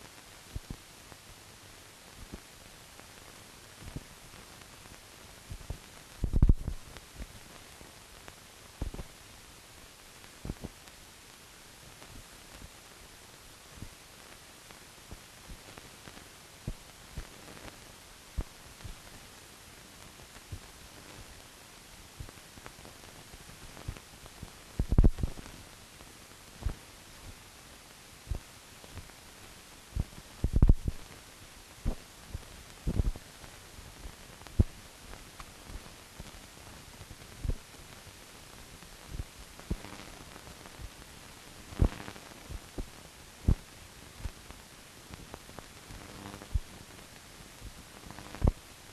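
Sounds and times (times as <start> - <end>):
film surface hiss: 0.0 - 48.9
film clicks and low pops: 5.5 - 9.2, 13.8 - 19.2, 22.2 - 25.7, 28.2 - 31.2, 31.8 - 38.0, 38.8 - 48.6.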